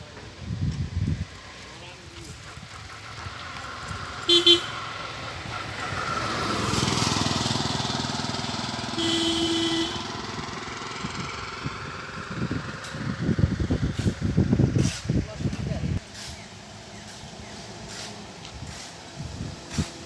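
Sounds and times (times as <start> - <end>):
vehicle passing: 1.2 - 15.1
vehicle horn honking: 4.2 - 4.9, 8.9 - 10.4.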